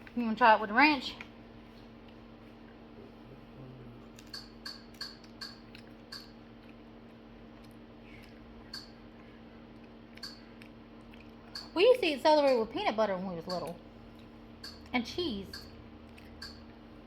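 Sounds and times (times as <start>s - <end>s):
steady low hum: 0.0s - 17.0s
chewing crisp celery: 9.1s - 11.6s.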